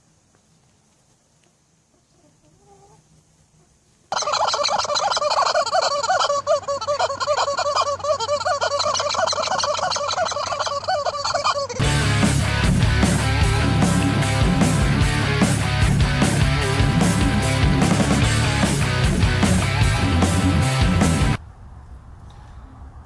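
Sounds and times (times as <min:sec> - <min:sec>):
poultry flock calling: 0:04.1 - 0:21.4.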